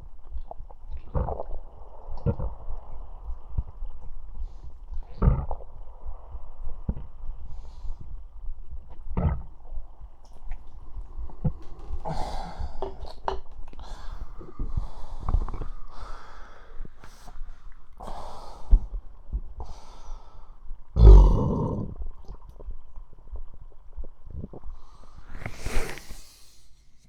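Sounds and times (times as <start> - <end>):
stomach gurgling and rumbling: 0.0 - 26.6
breathing: 4.3 - 5.2, 5.9 - 8.5, 10.3 - 20.8, 24.7 - 27.0.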